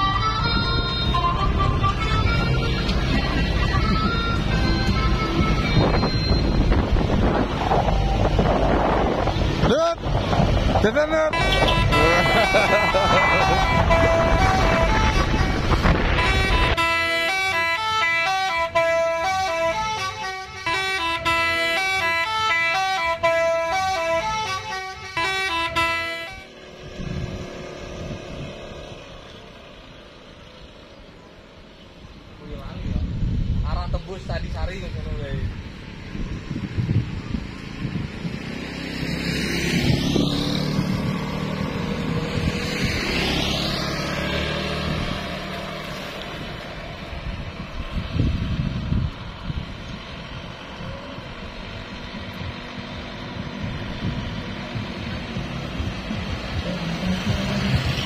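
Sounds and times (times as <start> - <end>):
road and wind noise: 0.0 - 58.0
multi-tone horn playing a tune: 11.3 - 26.5
vehicle engine running: 39.8 - 58.0.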